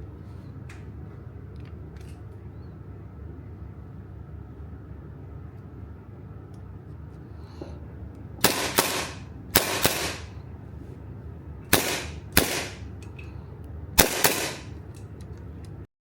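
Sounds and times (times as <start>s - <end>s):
airsoft gun shots: 8.4s - 10.4s, 11.7s - 12.9s, 14.0s - 14.7s.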